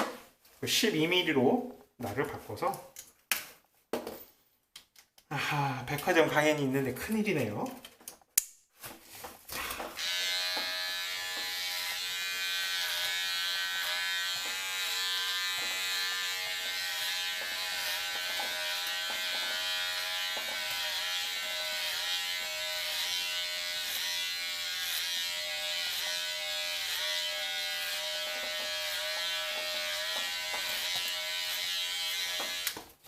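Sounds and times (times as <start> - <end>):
electric hair clipper buzzing: 9.8 - 32.8.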